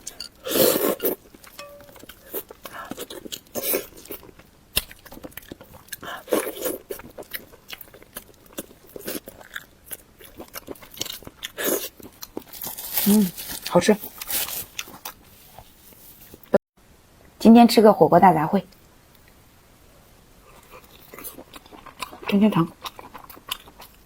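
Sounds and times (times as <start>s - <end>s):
biting and crunching: 0.5s - 15.6s, 20.5s - 24.0s
wet chewing mouth sounds: 0.5s - 15.6s, 20.4s - 24.0s.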